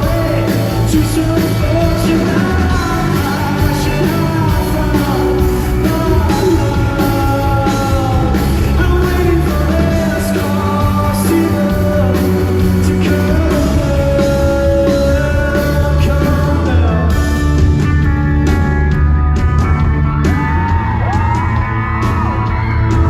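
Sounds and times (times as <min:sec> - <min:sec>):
man singing long notes: 0:00.0 - 0:17.3
live rock band playing: 0:00.0 - 0:23.0.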